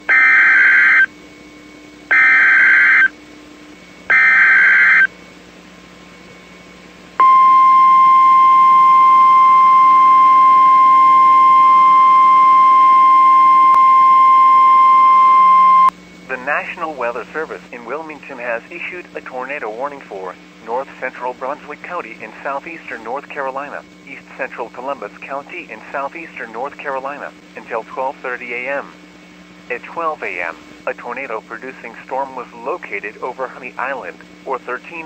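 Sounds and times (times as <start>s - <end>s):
steady warning alarm tone: 0.0s - 1.1s, 2.1s - 3.2s, 4.1s - 5.1s, 7.2s - 15.9s
warbling digital data tones: 2.1s - 3.1s, 4.1s - 5.1s.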